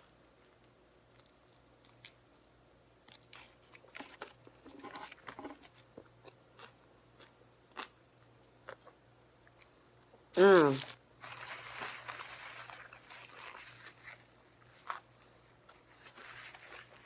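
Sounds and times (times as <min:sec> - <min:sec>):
faint steady hum: 0:00.0 - 0:17.0
chewing and biting sandwich: 0:03.1 - 0:09.0, 0:12.6 - 0:17.0.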